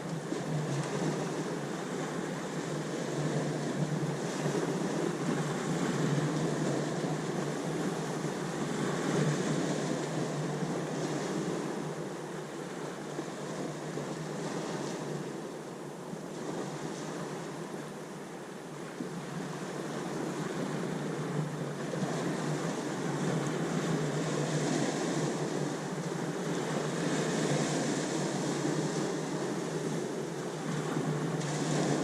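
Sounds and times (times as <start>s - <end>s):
ocean waves washing ashore: 0.0s - 32.0s.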